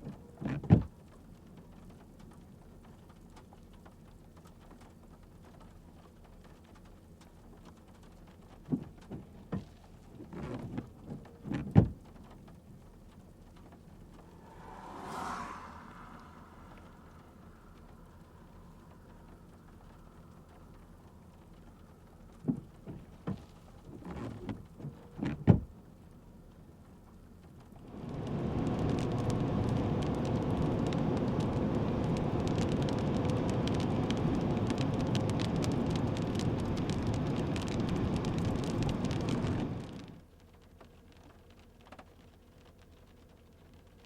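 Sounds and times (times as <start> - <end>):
heavy rain beating down: 27.8 - 40.2.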